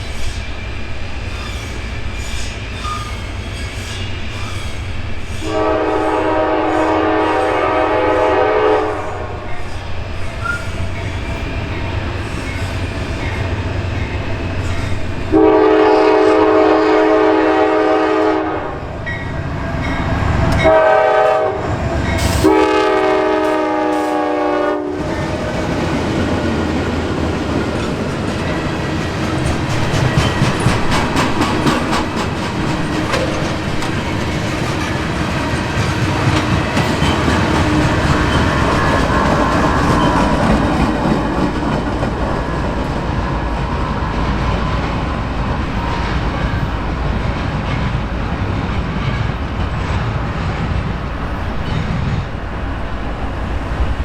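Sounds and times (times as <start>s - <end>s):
passing train rumble: 0.0s - 54.0s
locomotive air horn: 5.4s - 9.5s, 15.3s - 18.8s, 20.6s - 25.1s
wheels clacking over rail joints: 25.0s - 52.2s.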